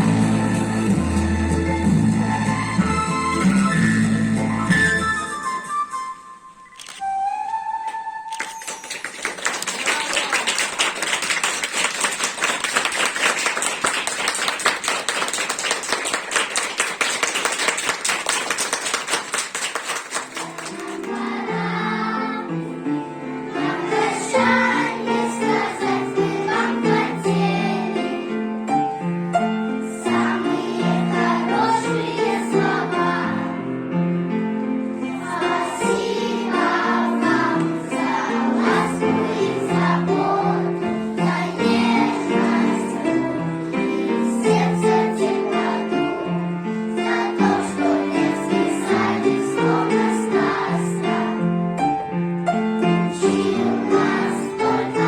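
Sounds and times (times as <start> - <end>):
instrumental accompaniment: 0.0 - 27.8
choir singing: 20.4 - 28.5, 29.8 - 33.7, 35.0 - 51.6, 53.1 - 55.0.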